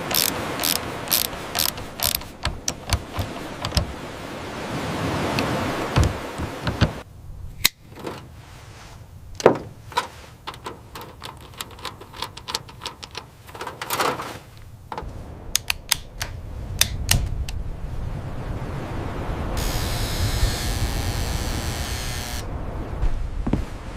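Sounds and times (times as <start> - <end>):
sharp knocks and clicks: 0.0 - 4.0, 6.0 - 7.0.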